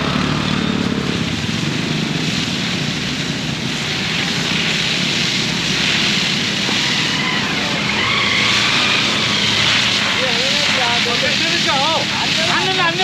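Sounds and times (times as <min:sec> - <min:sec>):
engine running with low pulsing: 0:00.0 - 0:12.8.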